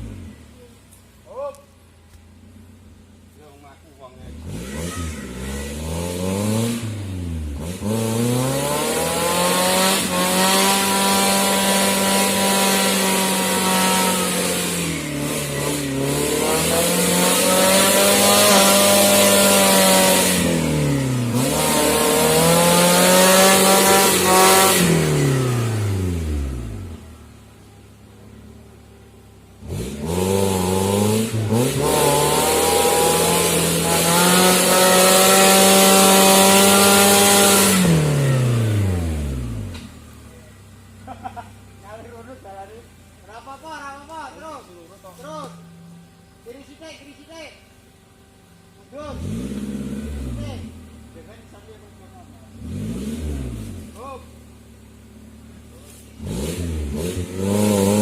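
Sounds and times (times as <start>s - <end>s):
car engine revving: 0.0s - 58.0s.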